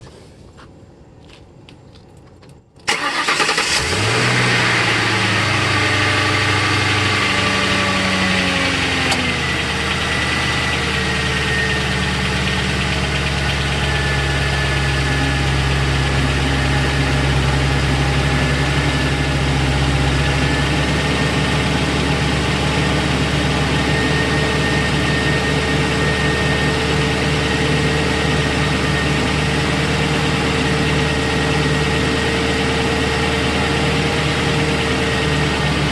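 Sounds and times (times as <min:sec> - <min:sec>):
car engine starting and idling: 0:01.5 - 0:35.9.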